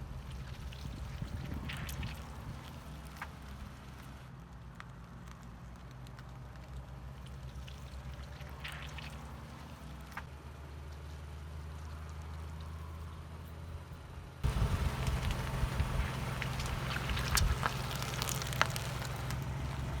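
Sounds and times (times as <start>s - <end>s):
liquid trickling: 0.0s - 4.2s, 6.3s - 10.3s, 14.4s - 20.0s
small crackles: 0.1s - 13.7s, 14.4s - 20.0s
car engine humming: 14.4s - 20.0s.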